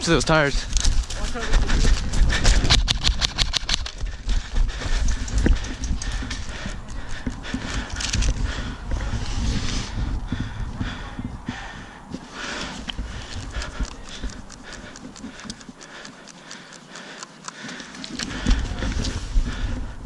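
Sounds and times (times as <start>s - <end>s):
footsteps: 0.5s - 20.0s
gear handling noise: 4.8s - 9.2s, 12.5s - 19.6s.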